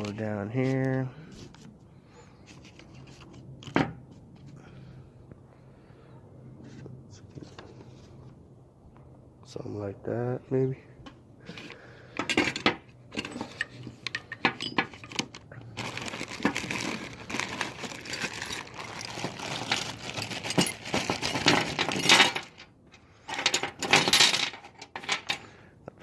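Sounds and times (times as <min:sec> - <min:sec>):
rustling and scraping: 0:00.0 - 0:04.8, 0:06.5 - 0:08.5, 0:11.0 - 0:25.4
metal parts clinking: 0:12.2 - 0:25.5.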